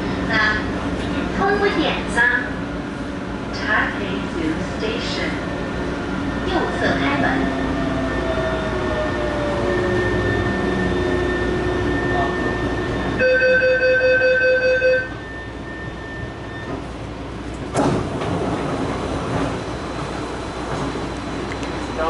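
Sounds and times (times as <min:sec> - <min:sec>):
train inverter whine: 0:00.0 - 0:22.0
sudden clunk: 0:17.7 - 0:18.6.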